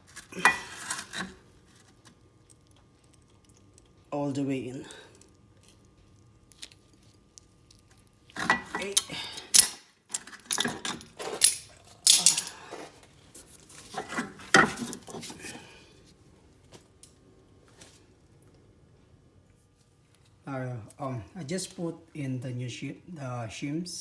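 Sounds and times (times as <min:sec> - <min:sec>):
metal brake parts clinking: 0:10.5 - 0:12.7.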